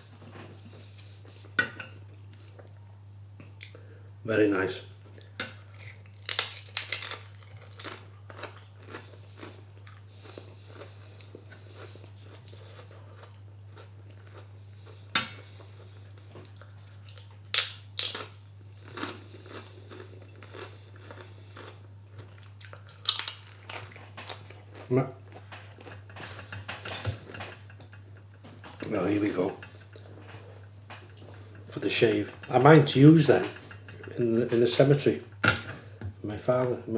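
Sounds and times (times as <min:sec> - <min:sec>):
person chewing food: 0:05.0 - 0:27.4.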